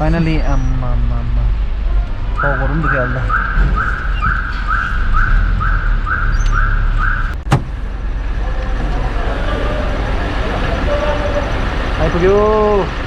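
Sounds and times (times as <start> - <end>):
engine and road rumble: 0.0 - 13.0
vehicle warning beeper: 2.4 - 7.5
sharp thud: 7.4 - 7.8.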